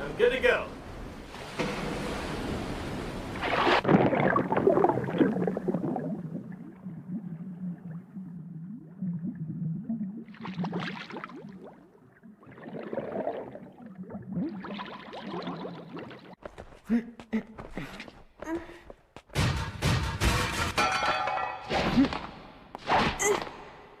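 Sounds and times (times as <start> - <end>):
cartoon bubbles gurgling: 3.5 - 16.4.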